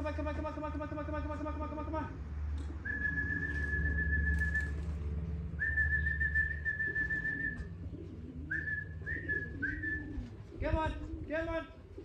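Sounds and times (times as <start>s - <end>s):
single-note whistles: 2.8s - 4.8s, 5.6s - 7.6s.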